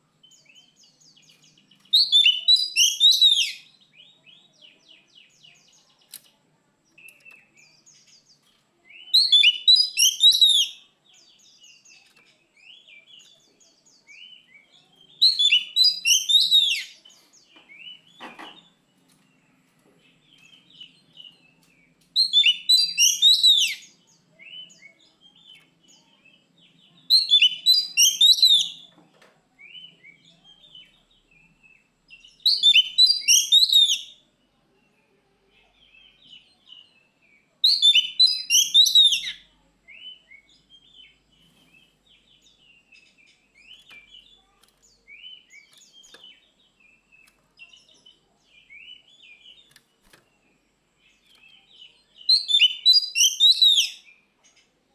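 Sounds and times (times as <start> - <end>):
bird chirps: 0.0 - 29.0, 29.6 - 54.9
bird singing rapid high song: 0.0 - 29.0, 29.6 - 54.9.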